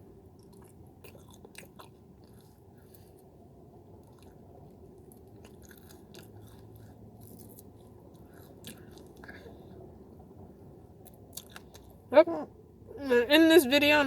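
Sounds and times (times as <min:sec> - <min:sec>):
chewing and biting: 0:00.3 - 0:03.3, 0:04.0 - 0:09.3, 0:11.0 - 0:12.0.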